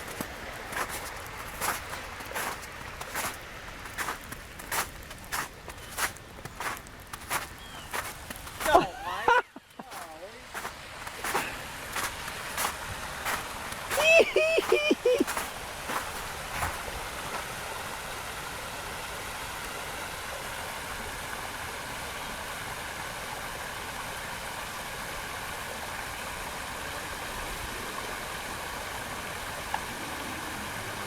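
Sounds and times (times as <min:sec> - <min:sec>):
water rushing over waterfall: 0:10.0 - 0:31.0.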